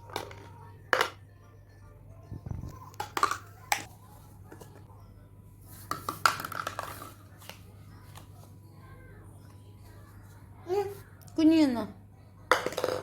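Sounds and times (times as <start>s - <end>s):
toy kitchen utensils clinking: 2.6s - 3.9s.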